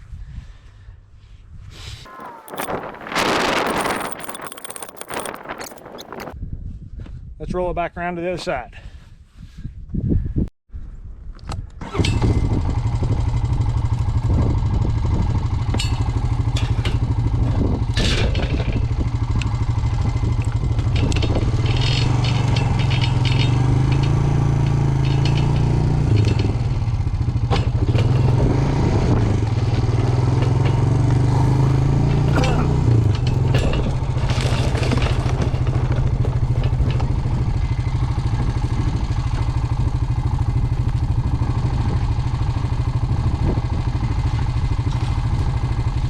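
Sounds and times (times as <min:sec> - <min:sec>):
clatter and knocks from load: 0:02.5 - 0:06.4, 0:15.7 - 0:28.6, 0:29.2 - 0:31.2, 0:32.0 - 0:38.2
vehicle engine running: 0:12.5 - 0:46.0.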